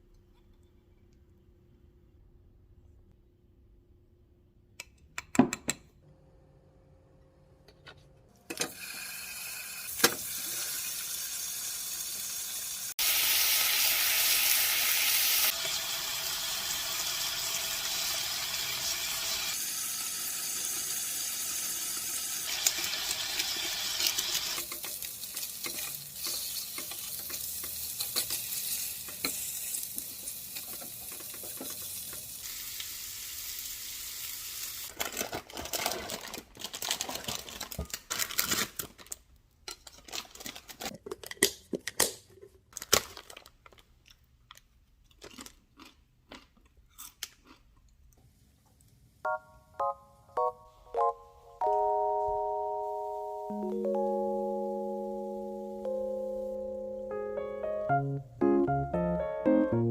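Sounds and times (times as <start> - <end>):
food sizzling in a frying pan: 8.8 - 34.9
stirring in a pan: 24.0 - 32.3.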